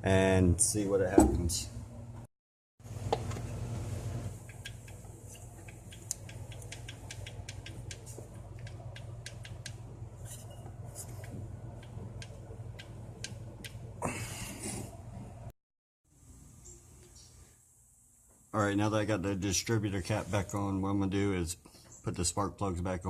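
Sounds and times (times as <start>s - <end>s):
steady low hum: 0.0s - 15.5s
light clicks and taps of parts: 4.4s - 9.8s.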